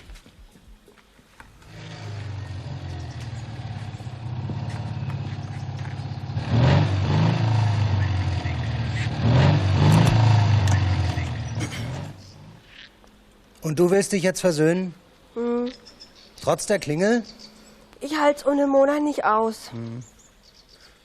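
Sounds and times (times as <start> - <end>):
vehicle engine revving: 1.6 - 12.6.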